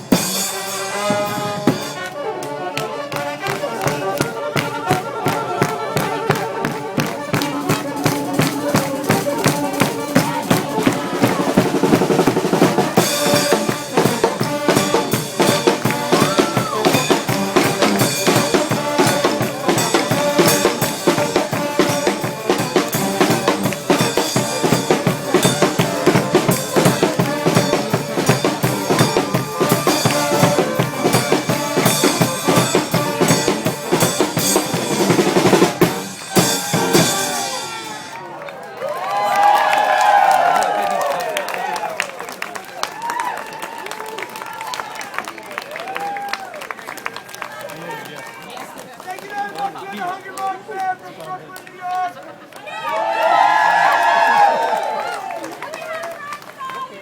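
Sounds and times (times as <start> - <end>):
snare and bass drum beating: 0.0 - 38.0
marching band playing: 0.0 - 38.5.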